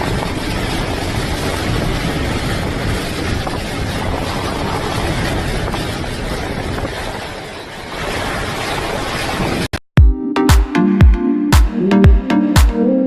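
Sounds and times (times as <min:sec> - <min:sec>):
hurricane wind on microphone: 0:00.0 - 0:09.8.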